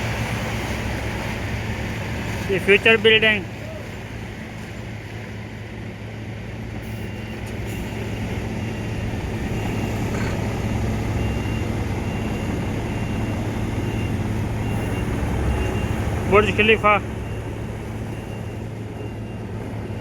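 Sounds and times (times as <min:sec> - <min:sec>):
heavy diesel engines running: 0:00.0 - 0:20.0
reversing alarm beeping: 0:02.5 - 0:03.6, 0:05.3 - 0:20.0.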